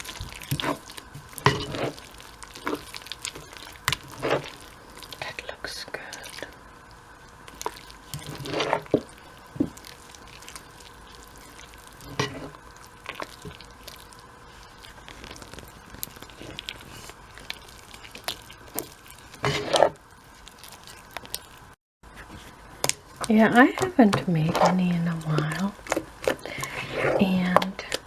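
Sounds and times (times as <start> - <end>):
batter squishing while stirred: 0.0 - 28.0
utensil scraping a bowl: 19.4 - 20.0, 23.3 - 27.7.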